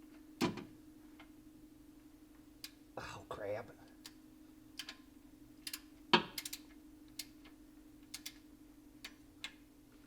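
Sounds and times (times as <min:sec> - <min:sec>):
steady low hum: 0:00.0 - 0:10.0
torque wrench clicks: 0:05.6 - 0:07.4, 0:08.1 - 0:08.4.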